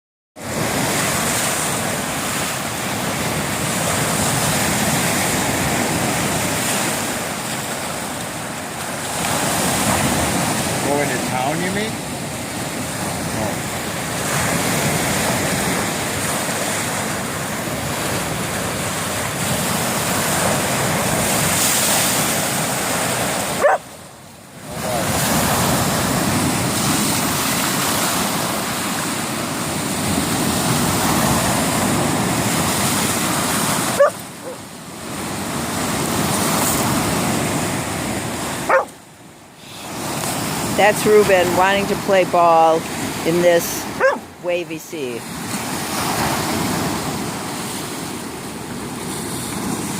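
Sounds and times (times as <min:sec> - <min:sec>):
sea surf: 0:00.4 - 0:49.9
wind: 0:00.4 - 0:49.9
dog barking: 0:23.6 - 0:23.9, 0:33.9 - 0:34.6, 0:38.6 - 0:39.0, 0:43.9 - 0:44.3.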